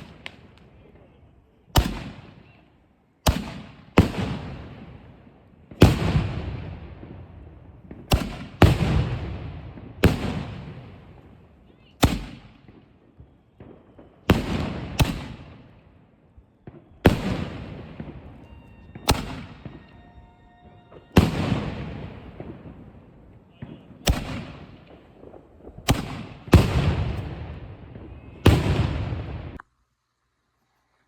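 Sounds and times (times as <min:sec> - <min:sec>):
firework shells banging: 0:16.8 - 0:22.9.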